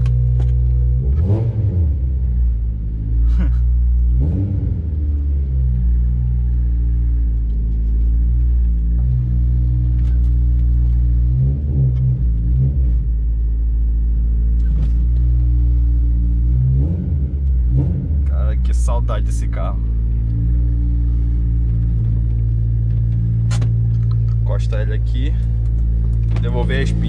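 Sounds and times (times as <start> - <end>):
car engine rumbling: 0.0 - 27.0.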